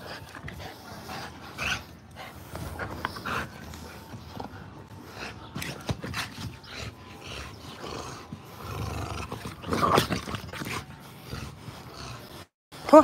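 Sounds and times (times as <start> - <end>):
dogs growling: 0.0 - 12.6.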